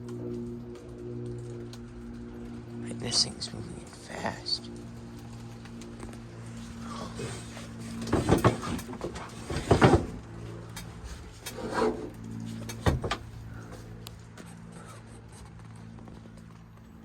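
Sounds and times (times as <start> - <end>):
low electrical hum: 0.0 - 17.0
knocks and rustling thumps: 6.7 - 14.0.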